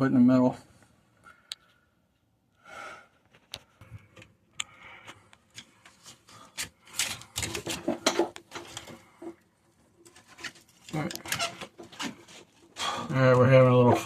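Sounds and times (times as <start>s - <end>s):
clicks taps and scraping on pipe: 3.2s - 14.0s.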